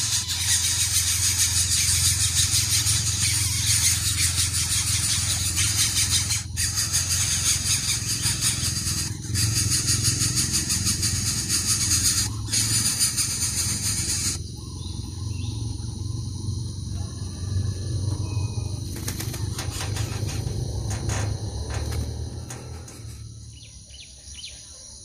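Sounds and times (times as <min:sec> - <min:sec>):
loud high buzzing hiss: 0:00.0 - 0:14.4
faint high calls: 0:00.0 - 0:24.7
low rumble: 0:14.6 - 0:23.8.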